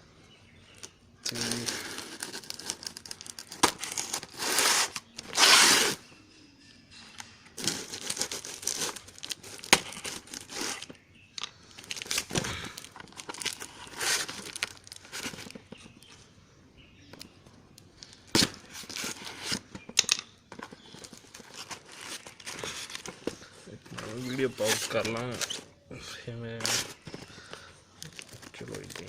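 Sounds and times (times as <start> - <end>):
packaging crinkling: 0.8 - 6.0, 7.6 - 11.0, 11.7 - 16.2, 17.9 - 19.8, 20.5 - 25.7, 26.6 - 29.0
packaging and tape ripping: 1.2 - 6.0, 7.6 - 11.0, 11.8 - 15.7, 18.0 - 19.8, 20.8 - 25.7, 26.6 - 29.0.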